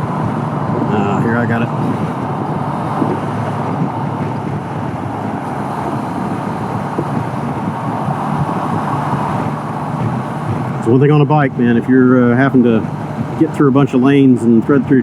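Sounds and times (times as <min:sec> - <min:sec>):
motorcycle engine running: 0:00.0 - 0:15.0
motorcycle road noise: 0:00.0 - 0:15.0
wind rush: 0:00.0 - 0:15.0.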